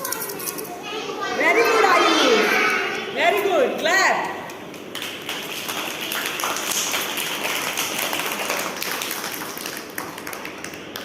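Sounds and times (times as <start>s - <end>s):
children clapping: 4.2s - 11.0s.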